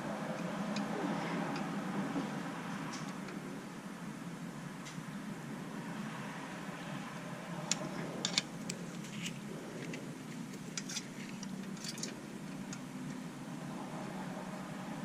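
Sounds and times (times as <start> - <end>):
steady low hum: 0.0 - 15.0
small tools clicking and tapping: 7.7 - 13.2.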